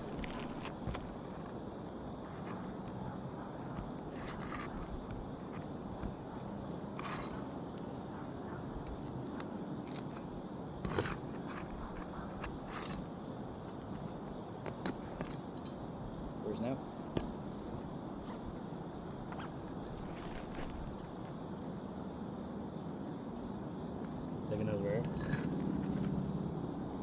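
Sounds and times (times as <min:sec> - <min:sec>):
roof shingles scraping and knocking: 0:00.0 - 0:07.5, 0:19.2 - 0:21.3
steady outdoor hiss: 0:00.0 - 0:27.0.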